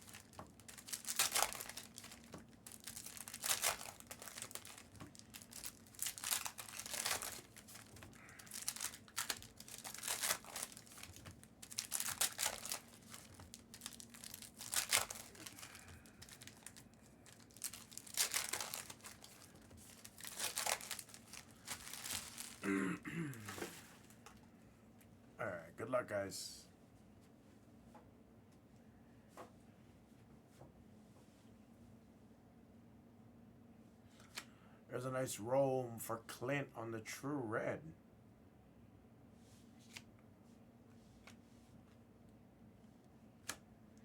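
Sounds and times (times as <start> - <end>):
card pack wrappers crinkling: 0.0 - 22.6.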